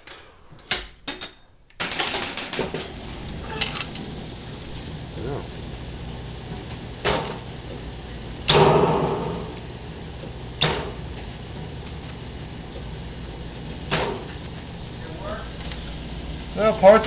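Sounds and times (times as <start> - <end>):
mechanical clacks of gun game: 0.7 - 2.9
machine hum: 2.3 - 17.0.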